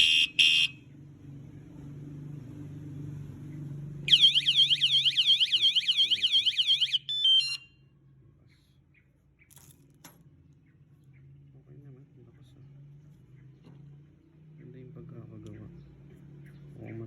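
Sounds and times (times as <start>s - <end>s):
stepped alarm beeps: 4.1s - 7.7s
warbling alarm siren: 4.1s - 7.7s.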